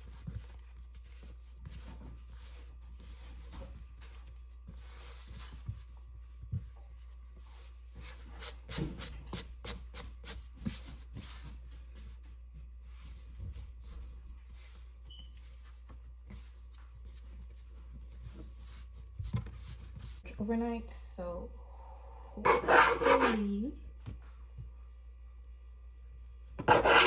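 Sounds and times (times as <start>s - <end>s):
low steady hum: 0.0s - 27.0s
scratchy rubbing and scraping: 22.4s - 23.5s, 26.6s - 27.0s.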